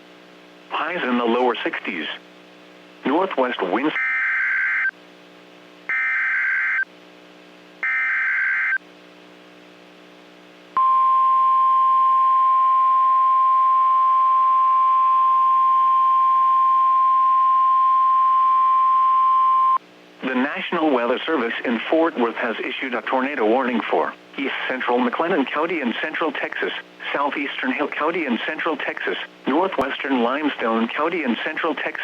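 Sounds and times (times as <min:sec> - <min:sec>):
steady warning alarm tone: 0:05.9 - 0:06.8, 0:07.8 - 0:08.8.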